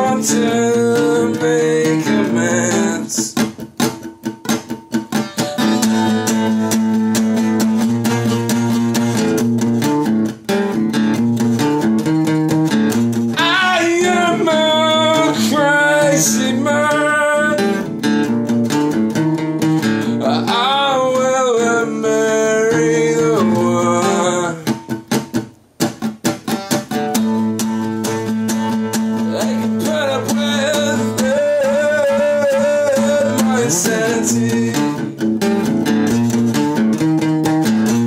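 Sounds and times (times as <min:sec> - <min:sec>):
person singing: 0:00.0 - 0:03.6, 0:13.3 - 0:18.1, 0:20.0 - 0:24.9, 0:29.1 - 0:35.3
strummed acoustic guitar: 0:00.0 - 0:38.0.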